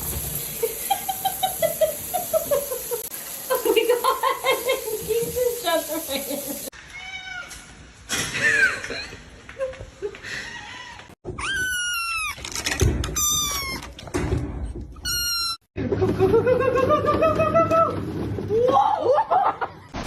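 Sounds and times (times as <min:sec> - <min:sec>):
cat yowling: 0:06.9 - 0:07.5
cat meowing: 0:06.9 - 0:07.6.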